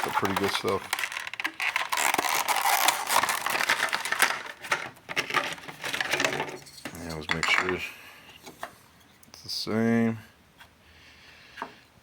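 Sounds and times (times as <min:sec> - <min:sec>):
packaging crinkling: 0:00.0 - 0:06.5.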